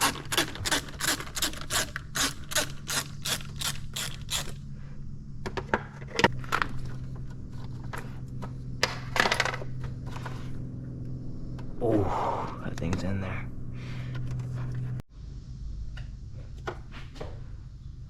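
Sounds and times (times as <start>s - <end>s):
ratchet clicking: 0.0s - 4.6s
tool clicks and scrapes: 0.0s - 4.6s
steady low hum: 0.0s - 18.0s.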